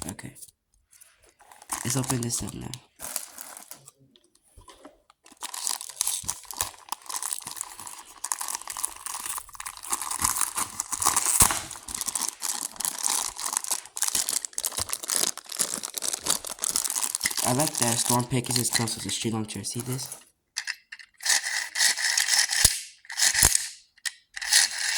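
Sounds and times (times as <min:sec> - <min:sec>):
packaging crinkling and ripping: 0:01.5 - 0:03.9, 0:05.3 - 0:20.2.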